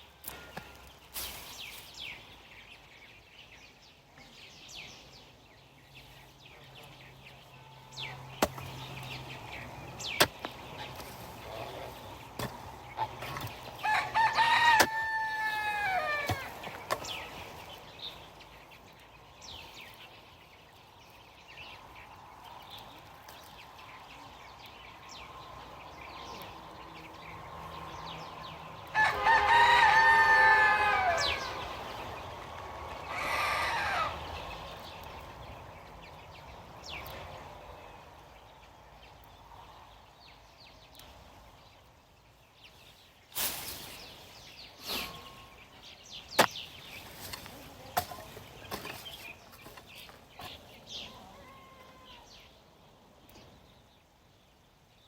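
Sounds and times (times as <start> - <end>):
rooster crowing: 13.8 - 16.5, 28.9 - 31.7, 33.1 - 34.2.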